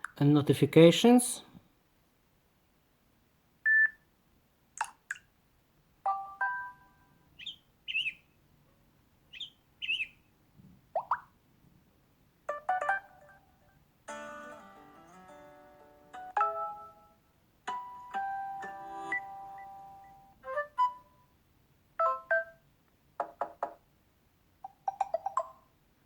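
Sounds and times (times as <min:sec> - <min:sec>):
phone notification beeps and chimes: 0:06.1 - 0:07.0, 0:22.0 - 0:22.6
multi-note phone chime: 0:06.1 - 0:07.1.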